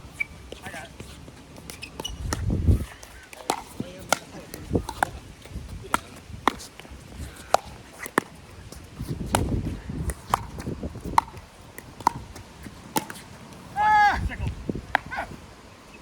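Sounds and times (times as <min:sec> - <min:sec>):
ball bouncing on court: 0:01.6 - 0:02.6, 0:03.3 - 0:13.7
paddles striking plastic ball: 0:01.6 - 0:13.6
wind rumble on microphone: 0:02.0 - 0:03.0, 0:03.8 - 0:07.8, 0:08.5 - 0:12.9, 0:13.8 - 0:15.9.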